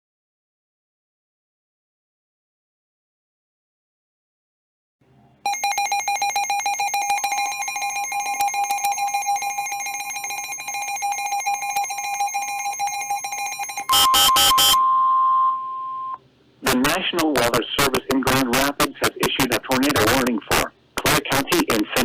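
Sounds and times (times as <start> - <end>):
loud data bursts: 5.5 - 14.8
steady single tone: 5.5 - 16.2
two-pitch alert tone with clicking: 5.5 - 16.2.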